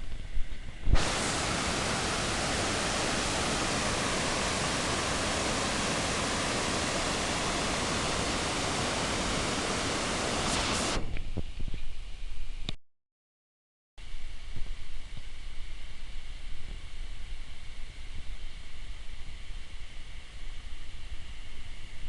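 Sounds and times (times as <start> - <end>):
waterfall rushing: 0.9 - 11.0.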